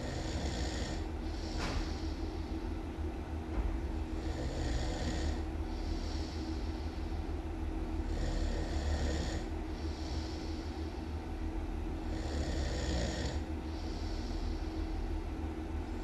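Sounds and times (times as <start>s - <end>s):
person snoring loudly: 0.0s - 1.1s, 4.2s - 6.3s, 8.0s - 9.5s, 12.1s - 13.5s
constant low hum: 0.0s - 16.0s.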